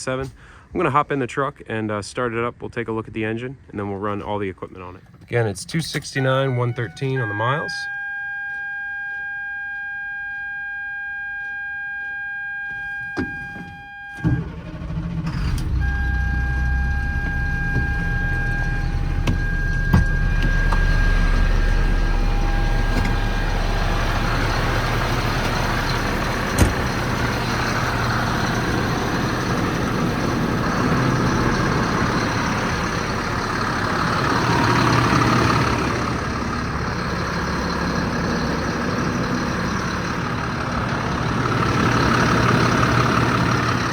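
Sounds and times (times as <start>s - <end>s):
diesel engine cranking and idling: 4.0s - 7.8s, 14.0s - 43.9s
dashboard warning buzzer: 5.8s - 25.6s.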